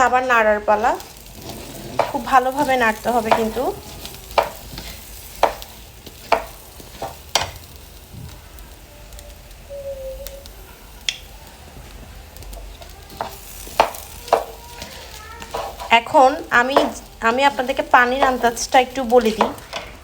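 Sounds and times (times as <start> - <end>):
food sizzling: 0.0 - 20.0
spoon scraping a pot: 1.2 - 7.6, 13.1 - 20.0.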